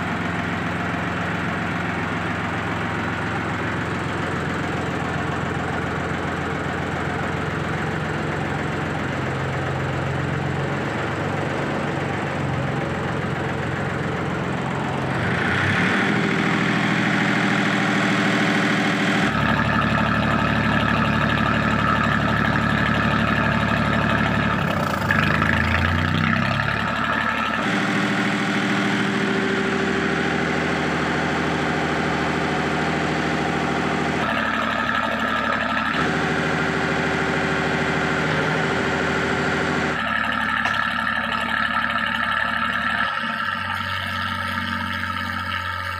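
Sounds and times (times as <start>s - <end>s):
marine diesel engine running: 0.0s - 45.9s.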